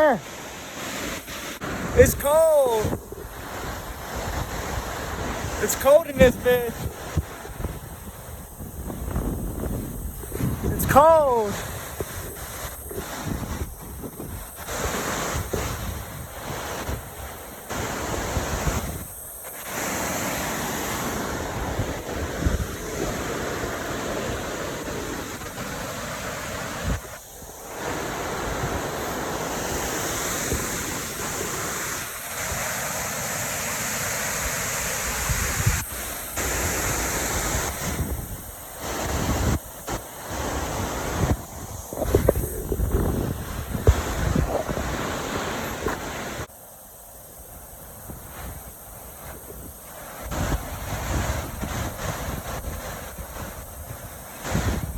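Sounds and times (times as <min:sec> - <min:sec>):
waterfall rushing: 0:00.0 - 0:08.5, 0:10.2 - 0:13.2
wind buffeting microphone: 0:06.2 - 0:10.9, 0:36.6 - 0:46.4, 0:48.0 - 0:54.9.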